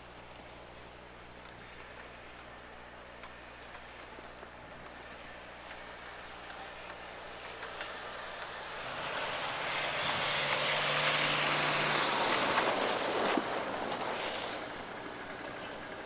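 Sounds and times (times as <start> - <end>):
vehicle passing by: 7.3 - 16.0.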